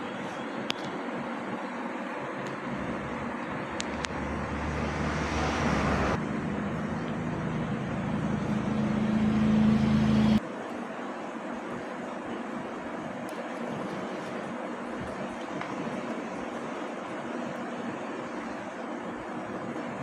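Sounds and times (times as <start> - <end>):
steady background noise: 0.0 - 20.0
vehicle engine running: 2.6 - 10.4.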